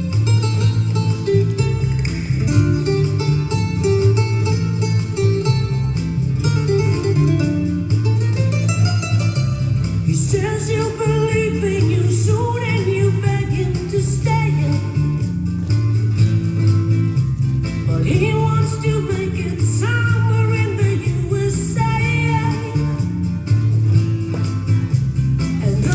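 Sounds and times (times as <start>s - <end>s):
plucked guitar: 0.0s - 25.9s
person singing: 10.0s - 15.3s, 17.9s - 23.2s, 25.6s - 25.9s.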